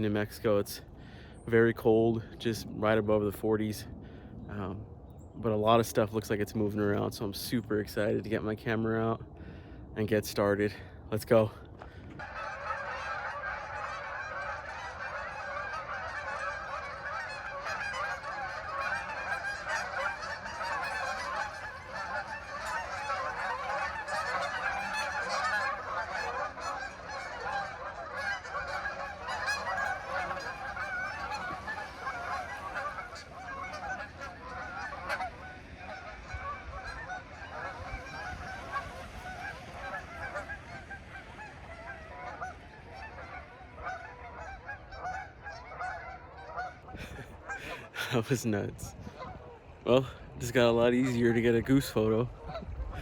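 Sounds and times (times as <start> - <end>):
flock of geese honking: 0.0 - 4.8, 5.6 - 53.0.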